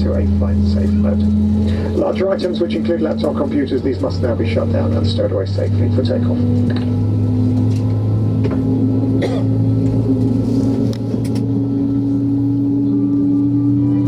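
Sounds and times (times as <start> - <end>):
airplane cabin hum: 0.0 - 14.0
tone rising in pitch: 6.4 - 14.0.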